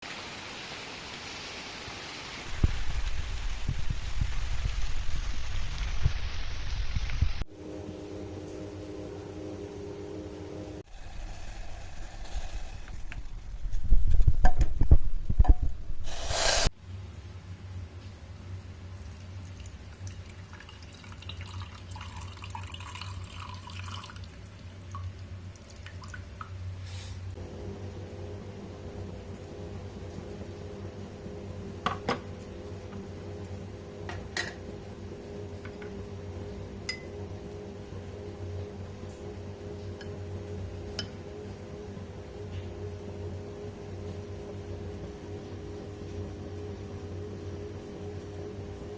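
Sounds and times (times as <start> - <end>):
steady low hum: 2.5 - 48.9
short burst of hiss: 16.0 - 16.7.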